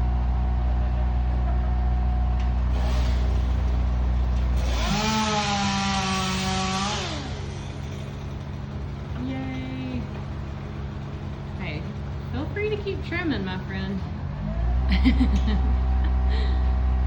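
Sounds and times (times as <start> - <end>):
motor running and revving: 2.7 - 10.2, 14.1 - 17.0.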